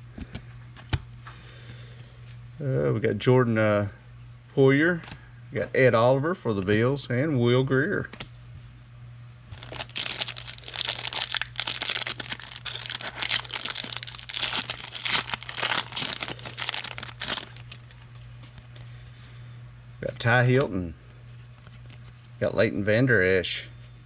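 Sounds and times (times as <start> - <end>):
low hum: 9.5 - 20.0
foil wrapper crinkling and tearing: 9.6 - 18.2.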